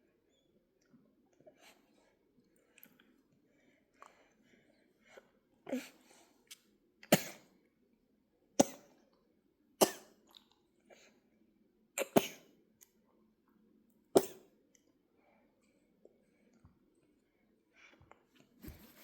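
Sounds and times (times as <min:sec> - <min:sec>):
baby coughing: 0:09.8 - 0:10.2, 0:12.0 - 0:12.5, 0:14.2 - 0:14.4.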